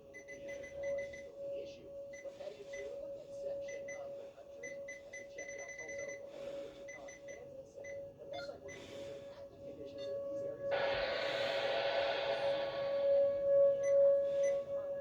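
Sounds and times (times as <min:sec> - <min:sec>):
high-pitched electronic beeps: 0:00.0 - 0:01.3
faint warning siren: 0:00.0 - 0:15.0.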